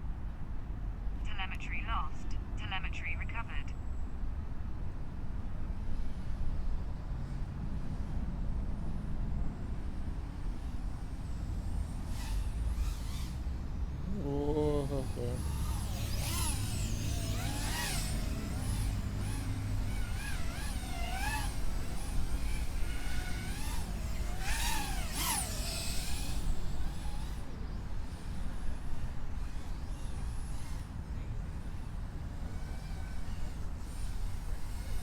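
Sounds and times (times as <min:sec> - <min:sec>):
drone motors whining: 0:10.6 - 0:30.9, 0:31.7 - 0:35.0.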